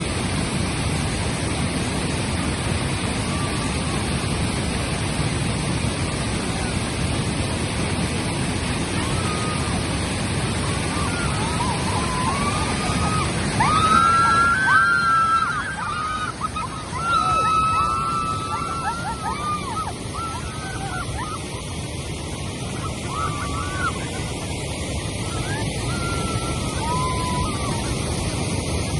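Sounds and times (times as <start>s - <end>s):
waterfall and rapids rushing: 0.0s - 28.9s.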